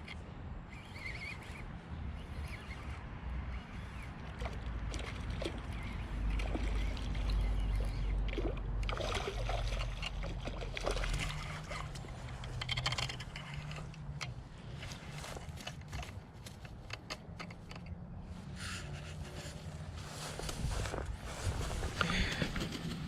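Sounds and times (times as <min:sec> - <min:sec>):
water splashing and sloshing: 0:04.2 - 0:14.0.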